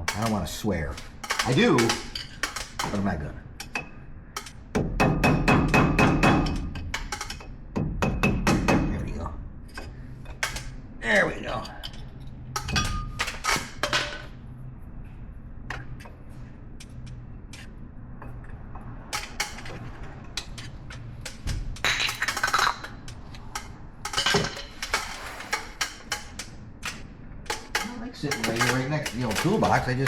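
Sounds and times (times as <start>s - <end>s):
metal tools clinking and rattling: 0.0s - 4.6s, 11.3s - 14.3s, 19.1s - 30.0s.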